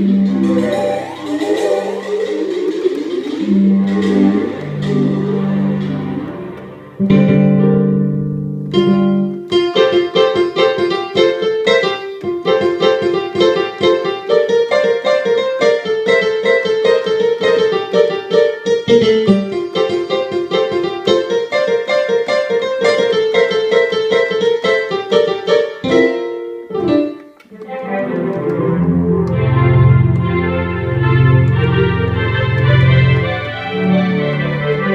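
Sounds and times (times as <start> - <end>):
synthesizer piano run with chords: 0.0 - 34.9.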